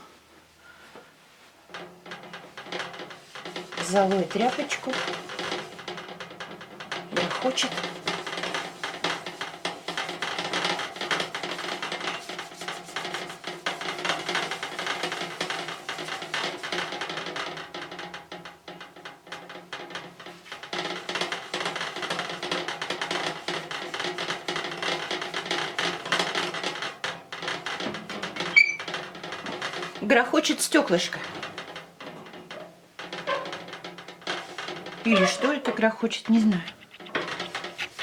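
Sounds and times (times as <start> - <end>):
glass rattling in frame: 27.4 - 38.0
rag rubbing on glass: 34.4 - 38.0.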